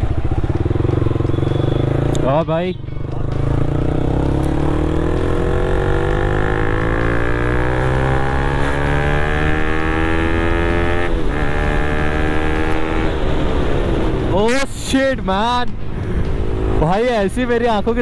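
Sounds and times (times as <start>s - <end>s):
motorcycle engine accelerating: 0.0s - 14.3s
low rumble of riding noise: 0.0s - 18.0s.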